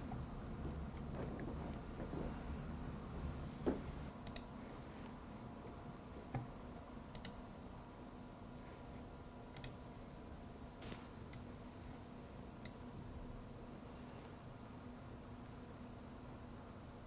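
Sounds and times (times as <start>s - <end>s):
faint steady hum: 0.0s - 17.0s
soft knocks: 3.6s - 4.0s.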